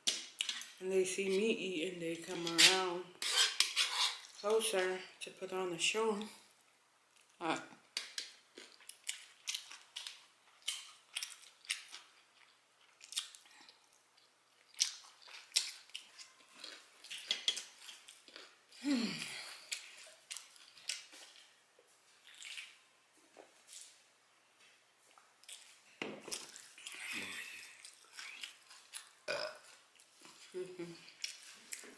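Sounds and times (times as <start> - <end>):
person chewing and smacking lips: 7.1 - 22.9, 25.0 - 31.9.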